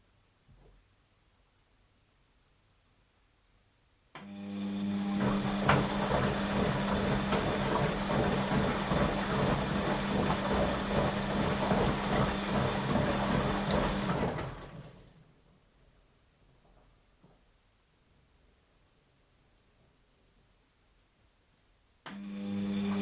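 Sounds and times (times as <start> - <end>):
washing machine pump humming: 4.3 - 15.3, 22.1 - 23.0
churning water: 5.2 - 15.0.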